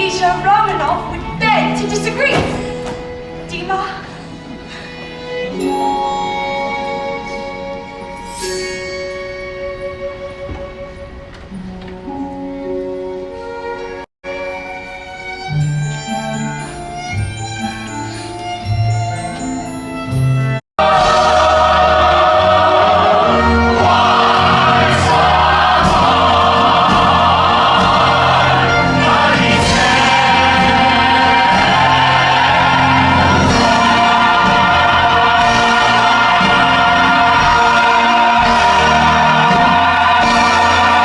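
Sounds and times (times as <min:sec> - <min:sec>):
soft instrumental music: 0:00.0 - 0:41.0
choral singing over orchestra: 0:20.8 - 0:41.0.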